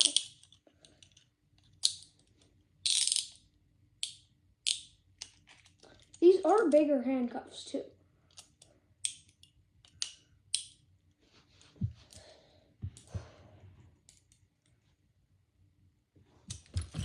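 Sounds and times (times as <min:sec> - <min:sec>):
handcuffs clicking and rattling: 0:00.0 - 0:03.4, 0:04.0 - 0:06.5.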